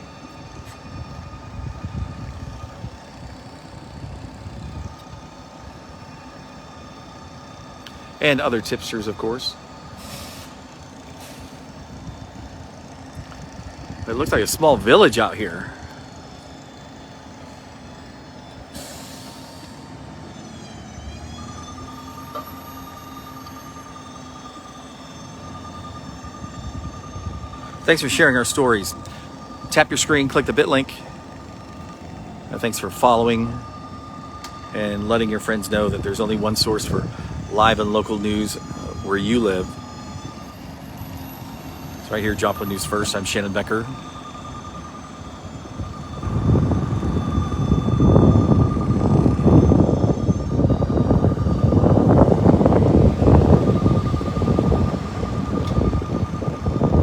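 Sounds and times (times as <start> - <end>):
heavy engines rumbling: 0.0 - 57.0
high-pitched whine: 0.0 - 57.0
air hiss: 10.0 - 10.6
steady tones: 21.4 - 57.0.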